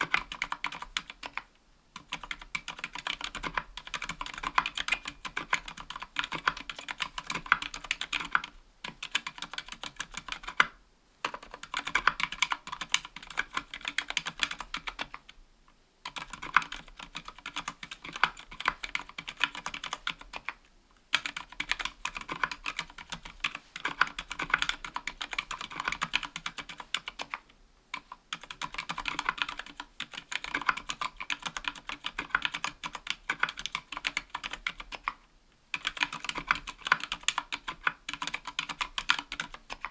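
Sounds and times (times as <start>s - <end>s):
soft keyboard typing: 0.0s - 15.4s, 16.0s - 39.9s.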